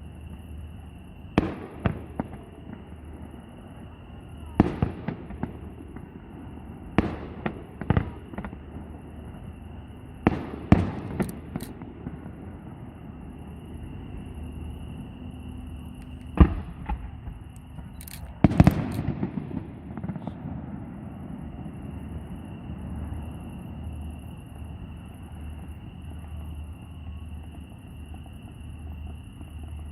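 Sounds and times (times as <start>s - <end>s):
fireworks bangs with echo: 1.3s - 13.2s, 16.3s - 23.0s.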